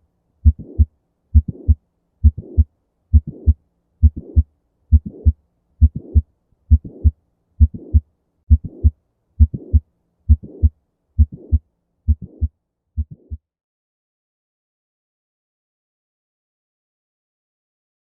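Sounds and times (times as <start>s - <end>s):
heartbeat with click and murmur: 0.4s - 13.4s.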